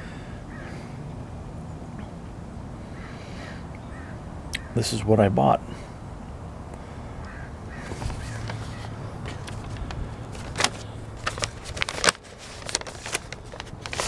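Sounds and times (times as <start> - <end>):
paper crackling and rustling: 7.7 - 14.0.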